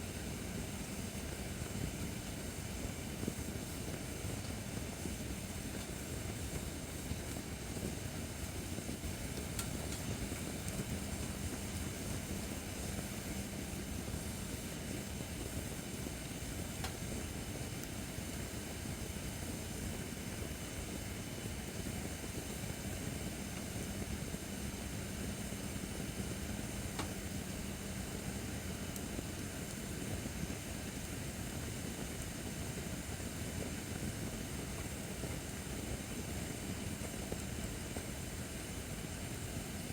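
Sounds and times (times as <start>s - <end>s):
fire pops: 9.2s - 12.9s, 16.7s - 17.2s, 26.9s - 27.3s.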